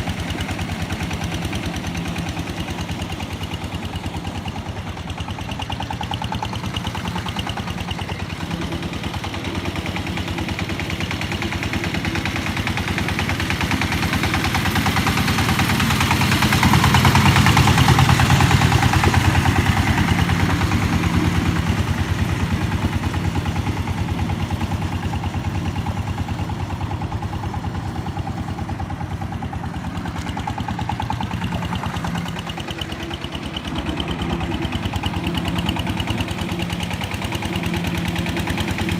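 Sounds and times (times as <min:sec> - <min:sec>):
engine thudding steadily: 0:00.0 - 0:38.9.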